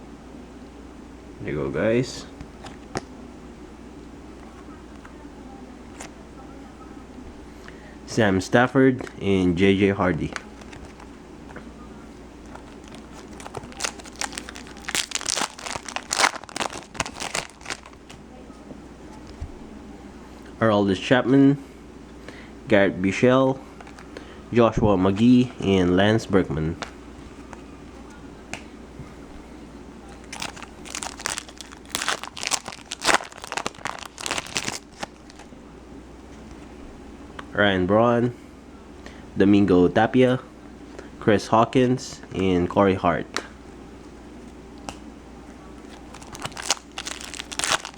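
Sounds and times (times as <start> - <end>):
foil wrapper crinkling and tearing: 12.5 - 18.1, 30.2 - 35.5, 45.9 - 47.9.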